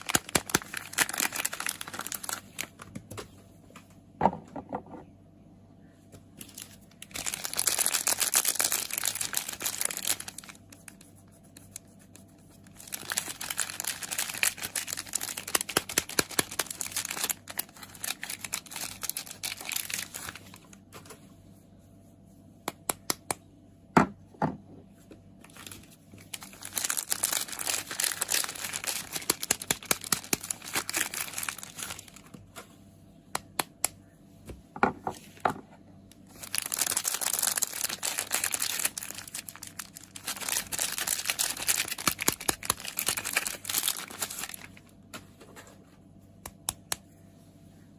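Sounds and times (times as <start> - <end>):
packaging crinkling and tearing: 0.0 - 3.1, 6.4 - 20.9, 25.4 - 32.4, 36.1 - 44.9.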